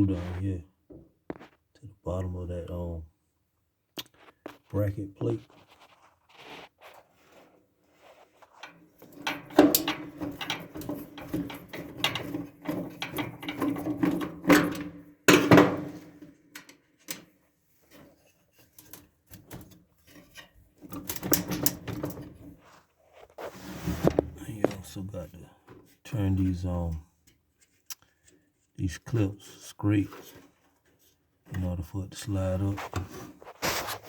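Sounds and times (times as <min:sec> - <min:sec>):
hand tool scraping: 0:20.1 - 0:24.9, 0:32.4 - 0:34.0.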